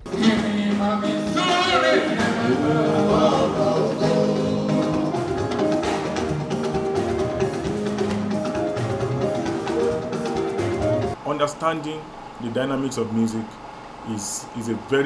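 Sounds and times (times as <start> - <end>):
person singing: 0.0 - 5.5
drums and percussion: 4.4 - 11.2.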